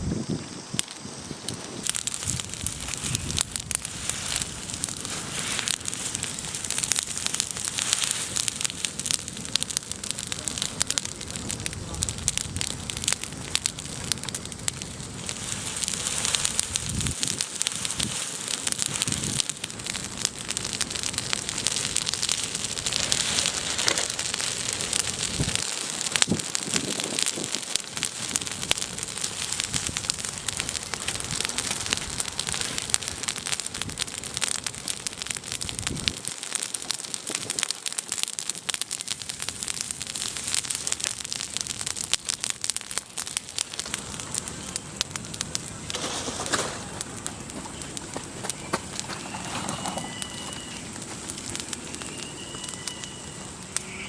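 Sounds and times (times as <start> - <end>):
cooking fire crackling: 0.0 - 54.0.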